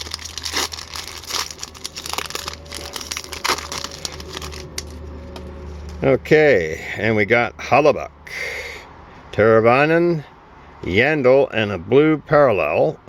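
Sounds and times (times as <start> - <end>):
wrapper tearing and crinkling: 0.0 - 6.0.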